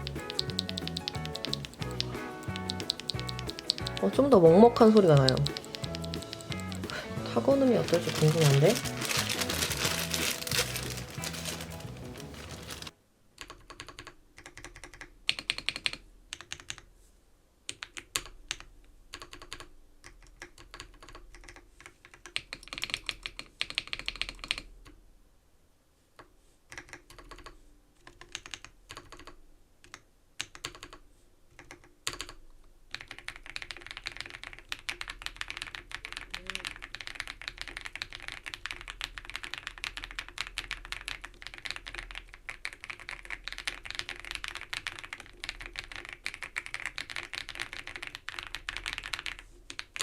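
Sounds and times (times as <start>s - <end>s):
mechanical keyboard keystrokes: 0.0s - 16.8s, 28.1s - 31.0s, 31.6s - 50.0s.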